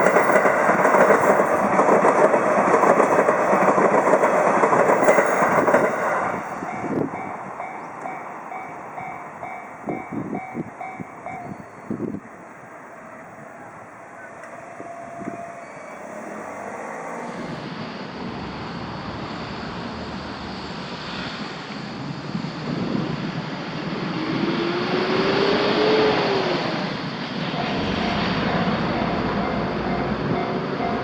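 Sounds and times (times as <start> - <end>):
train wheels rumbling on rail: 0.0 - 31.0
tone gliding upward in pitch: 27.6 - 31.0.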